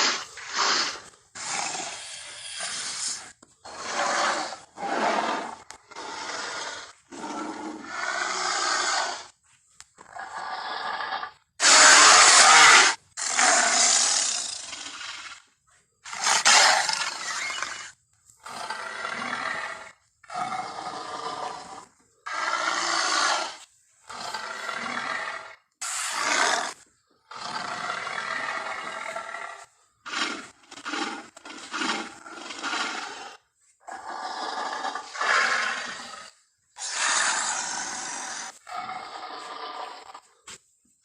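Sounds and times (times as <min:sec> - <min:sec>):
giant ape roars and grunts: 0:10.2 - 0:14.8, 0:16.1 - 0:40.3.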